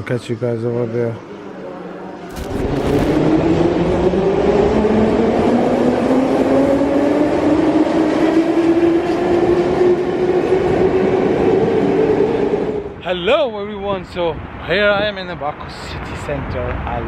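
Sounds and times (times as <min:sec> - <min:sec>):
metro train rumbling: 0:03.2 - 0:13.0.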